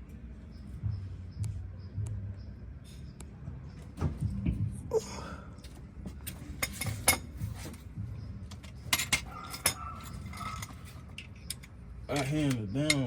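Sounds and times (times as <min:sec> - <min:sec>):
metal hand tools clinking: 0:08.5 - 0:13.0.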